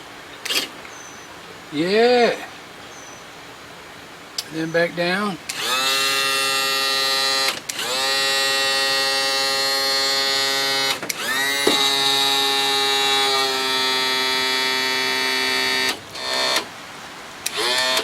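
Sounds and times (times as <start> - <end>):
electric pump motor whine: 5.5 - 16.7, 17.4 - 18.0.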